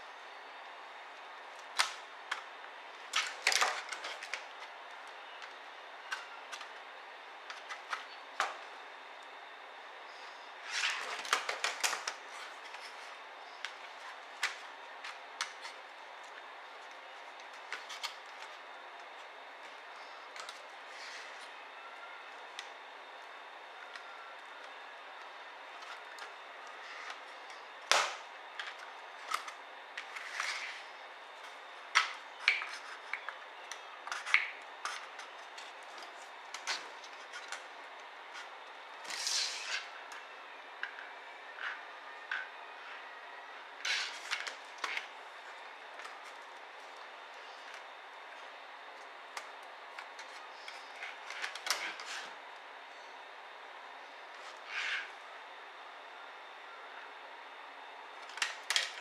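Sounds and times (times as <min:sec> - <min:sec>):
rustle of laptop parts: 0:10.1 - 0:21.6, 0:23.8 - 0:43.0, 0:43.8 - 0:52.4.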